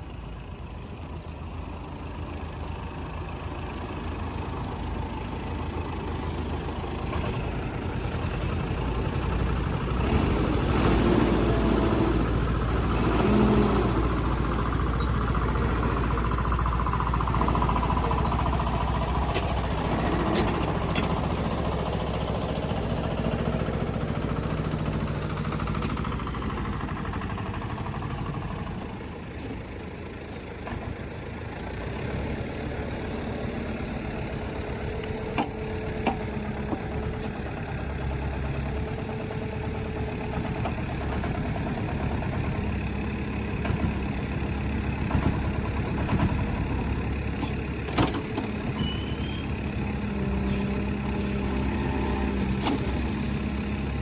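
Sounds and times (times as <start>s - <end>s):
diesel engine running under load: 0.0s - 54.0s.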